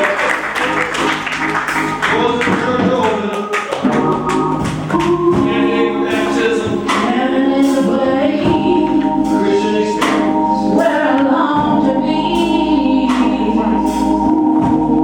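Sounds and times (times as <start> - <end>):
instrumental accompaniment: 0.0 - 15.0
voices singing gospel: 0.0 - 15.0.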